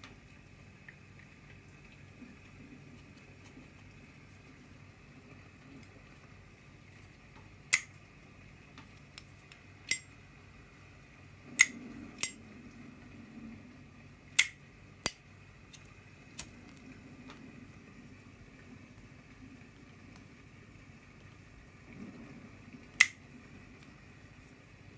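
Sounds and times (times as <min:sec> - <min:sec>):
metal lighter lid clicking: 0:07.7 - 0:07.9, 0:09.9 - 0:10.1, 0:11.6 - 0:12.4, 0:14.4 - 0:15.2.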